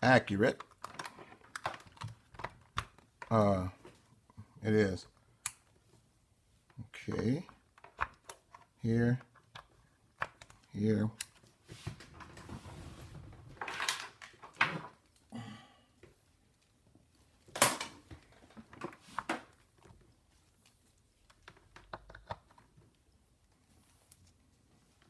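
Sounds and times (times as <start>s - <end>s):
small taps and rattles: 21.2s - 23.0s.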